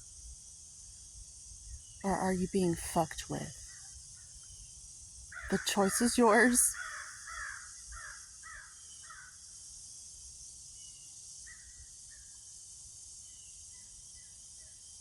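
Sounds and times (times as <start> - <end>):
crows cawing: 6.7 - 9.3.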